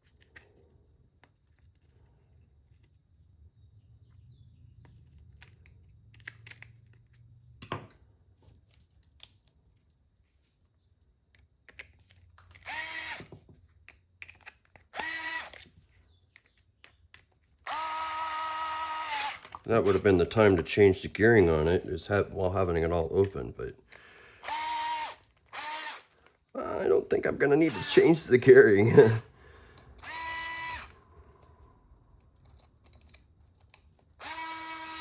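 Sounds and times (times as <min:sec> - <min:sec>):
cordless power driver running: 0:12.7 - 0:13.3, 0:15.0 - 0:15.6, 0:17.7 - 0:20.0, 0:24.4 - 0:26.1, 0:27.7 - 0:28.0, 0:29.8 - 0:31.0, 0:34.2 - 0:35.0.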